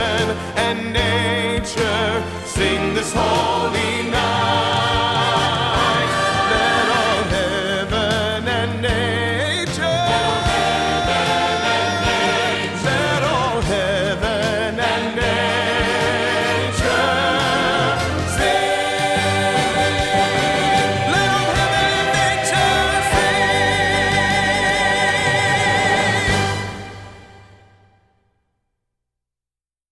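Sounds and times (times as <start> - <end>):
drum strikes: 0.0 - 27.6
choir singing: 0.0 - 27.9
orchestral accompaniment: 0.0 - 28.0.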